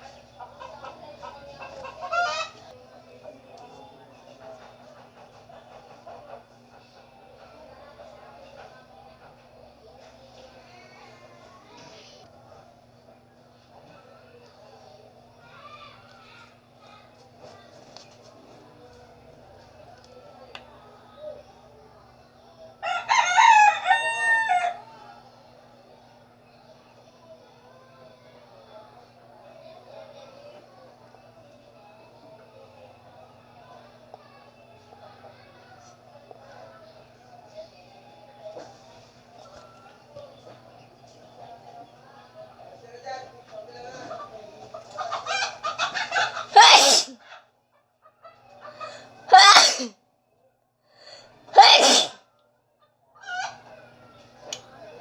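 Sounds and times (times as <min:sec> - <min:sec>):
rooster crowing: 0:01.9 - 0:02.7, 0:22.8 - 0:25.0
person sneezing loudly: 0:46.6 - 0:47.2, 0:49.3 - 0:49.9, 0:51.6 - 0:52.2.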